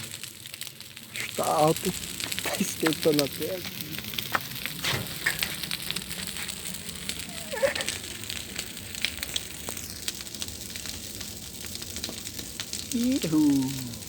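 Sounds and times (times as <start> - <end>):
bonfire crackling and popping: 0.0 - 14.0
flames hissing: 0.0 - 14.0.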